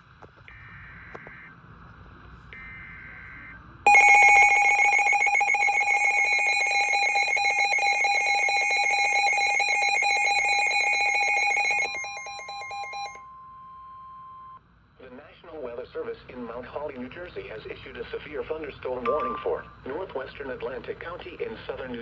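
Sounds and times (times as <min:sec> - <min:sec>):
harsh two-tone alarm signal: 0:02.6 - 0:13.3
single steady tone: 0:03.9 - 0:08.1.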